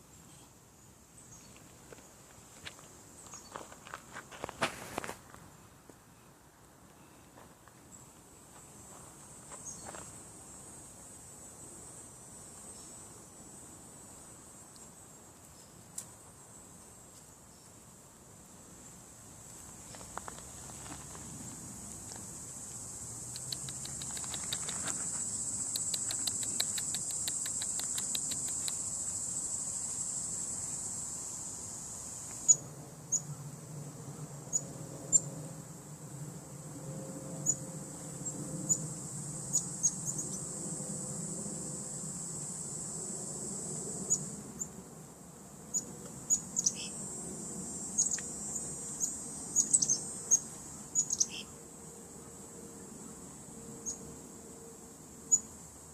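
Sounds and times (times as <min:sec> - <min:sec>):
crickets droning: 0:00.0 - 0:55.9
sharp bird chirps: 0:45.7 - 0:47.0, 0:51.0 - 0:51.5.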